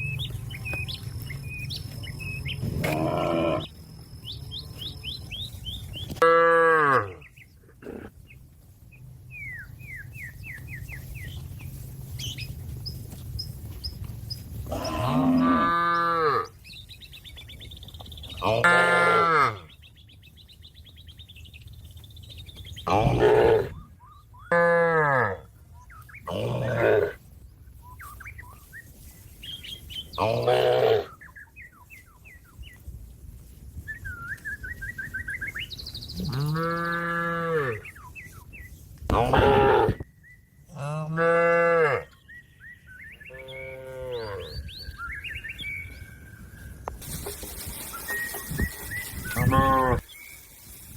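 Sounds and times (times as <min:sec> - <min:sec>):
small birds chirping: 0:00.0 - 0:06.2, 0:07.1 - 0:18.6, 0:19.6 - 0:23.2, 0:27.4 - 0:38.9, 0:42.1 - 0:50.9
cow mooing: 0:02.8 - 0:03.7, 0:06.2 - 0:07.2, 0:14.7 - 0:16.5, 0:18.4 - 0:19.6, 0:40.7 - 0:42.2, 0:43.3 - 0:44.6, 0:49.4 - 0:50.0.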